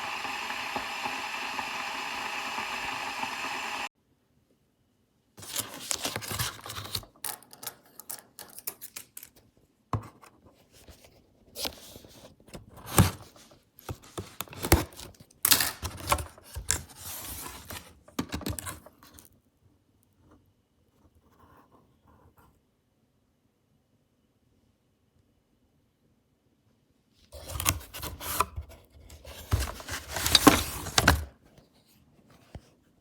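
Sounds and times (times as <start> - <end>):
scraping and rustling handling noise: 5.4 - 19.4, 27.2 - 33.0.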